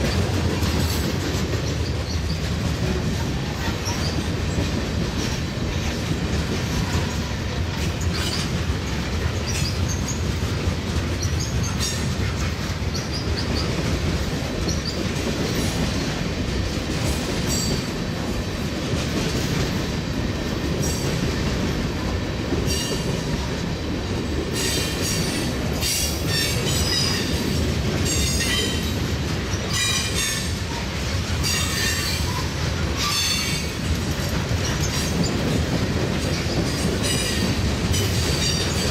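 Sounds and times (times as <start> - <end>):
freight train rumbling past: 0.0 - 38.9
train wheels clattering: 0.0 - 38.9
train wheel squeal: 3.4 - 4.6, 6.8 - 10.5, 11.1 - 13.8, 14.6 - 15.8, 17.5 - 18.0, 22.6 - 23.4, 24.5 - 35.6, 36.2 - 38.9.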